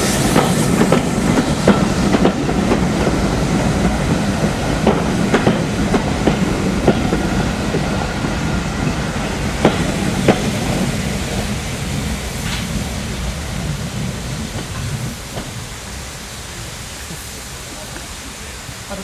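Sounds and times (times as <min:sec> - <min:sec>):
wheels clicking over rail joints: 0:00.0 - 0:11.5
train rumbling: 0:00.0 - 0:19.0.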